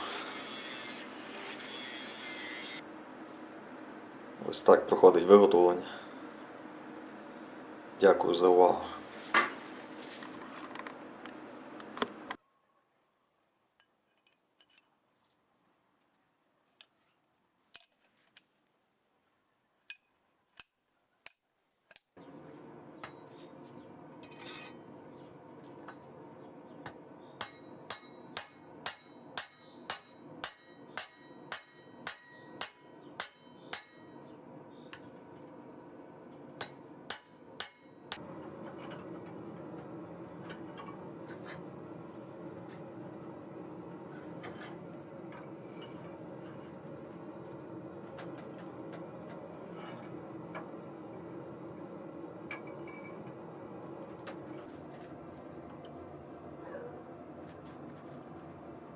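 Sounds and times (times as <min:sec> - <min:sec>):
hammer striking steel: 0:26.8 - 0:41.7.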